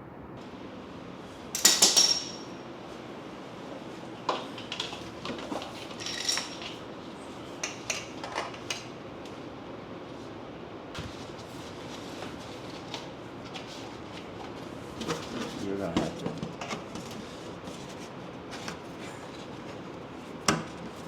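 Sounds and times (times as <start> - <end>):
metal tools clinking: 1.6 - 2.5.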